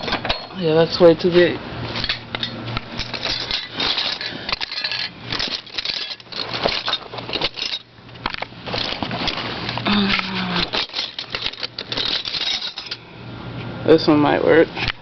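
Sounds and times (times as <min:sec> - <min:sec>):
metal sockets clinking and rattling: 0:02.0 - 0:09.4, 0:10.6 - 0:13.0.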